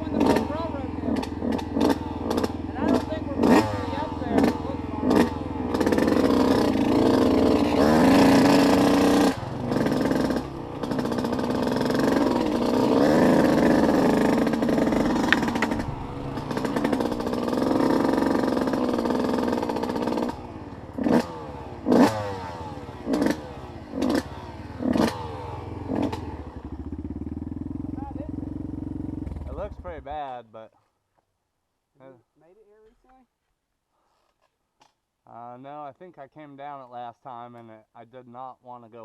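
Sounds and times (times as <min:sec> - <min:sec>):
off-road vehicle engine revving: 0:00.0 - 0:30.2.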